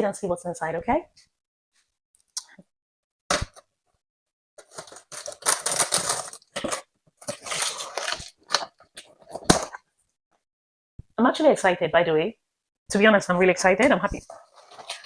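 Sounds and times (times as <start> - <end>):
cardboard rustling and tearing: 4.6 - 9.8.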